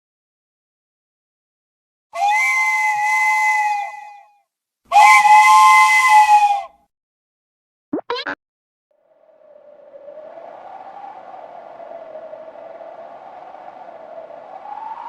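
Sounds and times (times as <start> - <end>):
steam whistle blasts: 2.2 - 4.3, 4.9 - 6.7.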